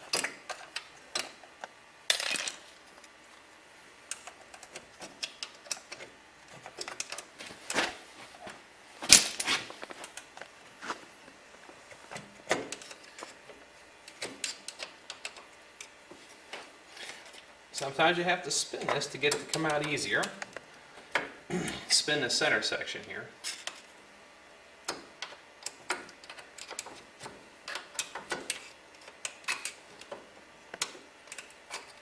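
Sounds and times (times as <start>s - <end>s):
metal parts clinking and scraping: 2.1s - 2.7s.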